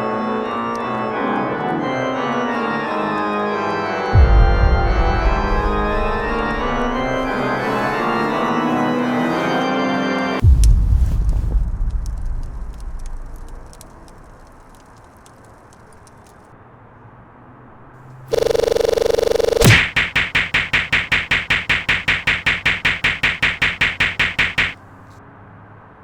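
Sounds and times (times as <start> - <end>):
organ-like keyboard chords: 18.3 - 24.8.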